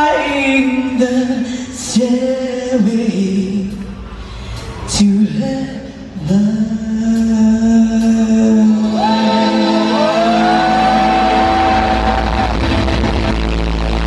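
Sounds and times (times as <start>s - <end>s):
deep bass: 6.0s - 14.0s
voices singing sustained notes: 8.5s - 13.8s.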